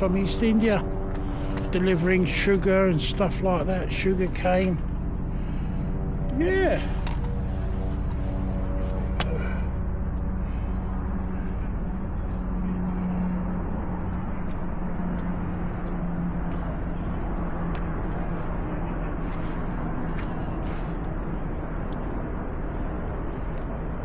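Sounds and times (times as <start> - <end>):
distant traffic noise: 0.0 - 24.0
low hum: 0.0 - 24.0.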